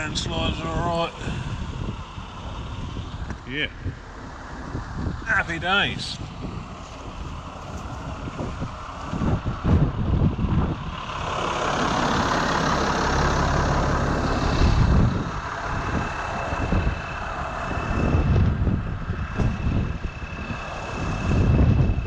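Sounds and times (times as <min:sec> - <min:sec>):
tractor diesel engine running: 0:00.0 - 0:22.0.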